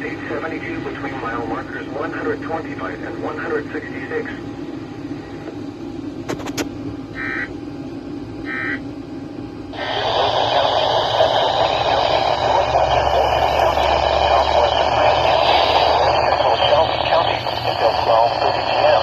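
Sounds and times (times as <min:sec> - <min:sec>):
radio static hiss: 0:00.0 - 0:04.4, 0:06.2 - 0:07.5, 0:09.7 - 0:19.0.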